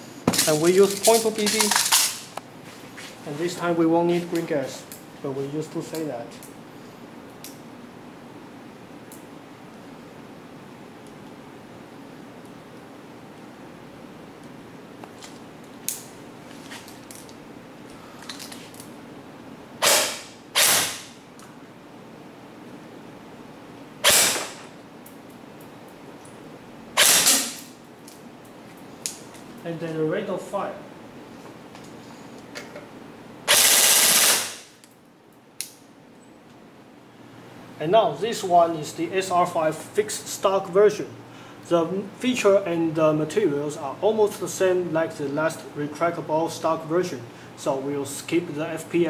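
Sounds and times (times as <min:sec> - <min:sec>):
airsoft gun shot: 0:19.8 - 0:21.2, 0:24.0 - 0:24.7, 0:27.0 - 0:27.6, 0:33.5 - 0:34.7.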